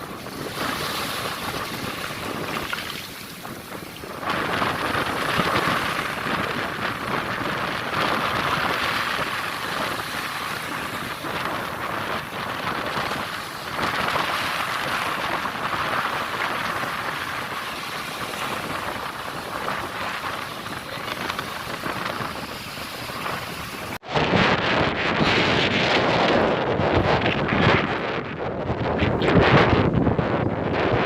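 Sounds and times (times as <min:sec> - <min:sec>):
water rushing and splashing: 0:00.0 - 0:24.3.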